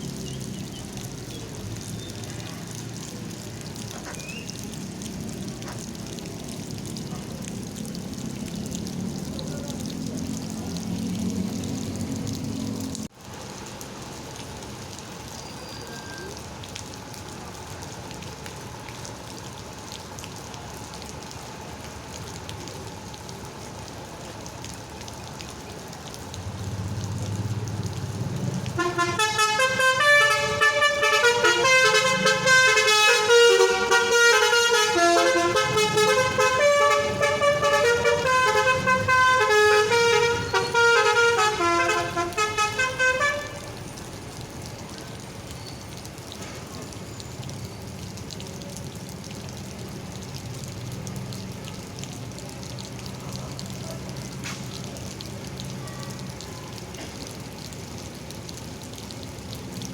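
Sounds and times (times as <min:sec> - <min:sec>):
low engine rumble: 0:25.6 - 0:45.4
multi-trumpet air horn melody: 0:28.7 - 0:43.8.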